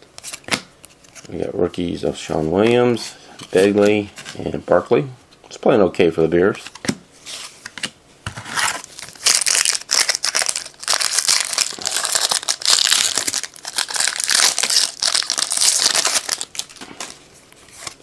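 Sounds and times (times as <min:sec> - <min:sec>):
wrapper tearing and crinkling: 0:08.6 - 0:17.2.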